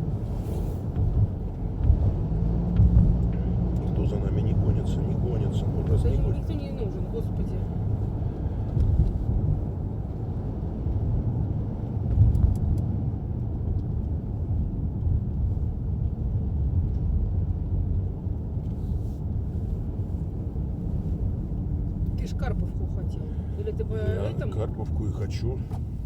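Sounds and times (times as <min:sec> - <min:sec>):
car engine and road rumble: 0:00.0 - 0:26.0.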